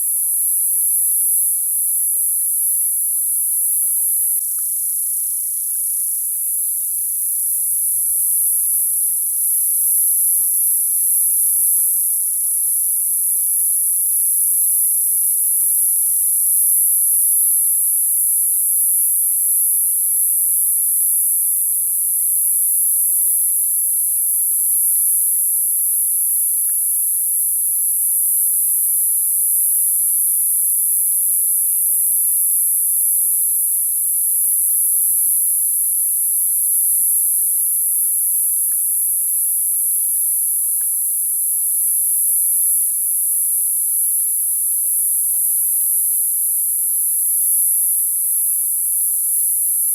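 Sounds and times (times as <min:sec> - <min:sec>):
cicadas buzzing: 0:00.0 - 0:49.9.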